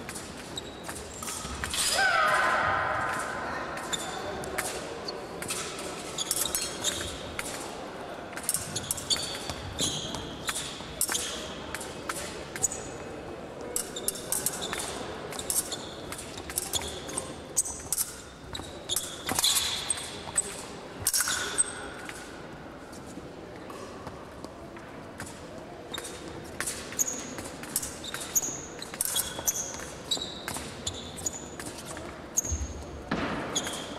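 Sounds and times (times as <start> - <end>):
fencing blades clashing: 0.0 - 2.4, 3.0 - 7.7, 8.3 - 13.0, 13.7 - 22.4, 25.2 - 32.6
shoe squeaks: 0.4 - 1.9, 3.8 - 4.4, 6.0 - 7.2, 8.5 - 11.6, 13.8 - 20.6, 21.2 - 22.0, 26.9 - 32.8, 33.5 - 33.9.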